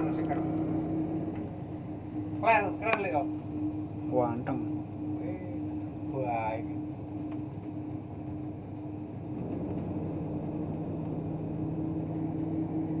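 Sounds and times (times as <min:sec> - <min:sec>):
air conditioning unit humming: 0:00.0 - 0:13.0
lower steady tone: 0:00.0 - 0:13.0.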